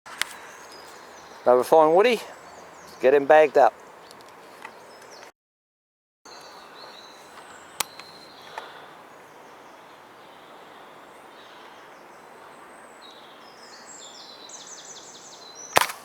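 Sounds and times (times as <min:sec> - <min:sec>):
birds chirping: 0:00.1 - 0:05.3, 0:06.3 - 0:15.8
sharp click: 0:07.8 - 0:08.1, 0:15.7 - 0:16.0.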